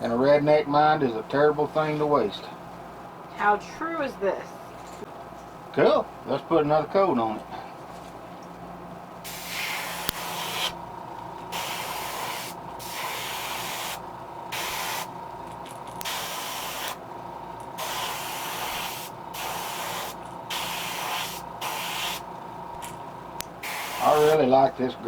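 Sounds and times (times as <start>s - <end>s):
steady hum: 0.0s - 25.0s
airbrush spraying hiss: 9.3s - 10.8s, 11.5s - 15.1s, 16.0s - 17.0s, 17.8s - 22.2s, 23.6s - 24.4s.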